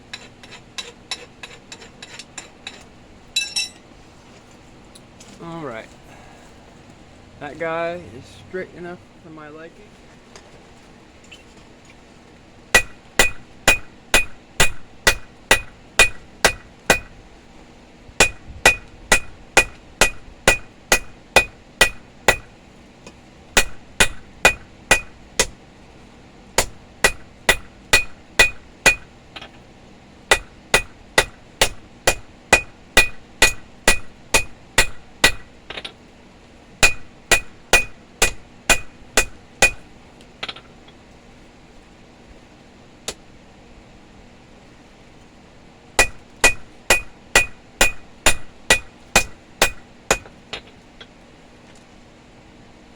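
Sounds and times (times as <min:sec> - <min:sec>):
hammer ringing on anvil: 0:03.4 - 0:03.8, 0:46.0 - 0:50.3.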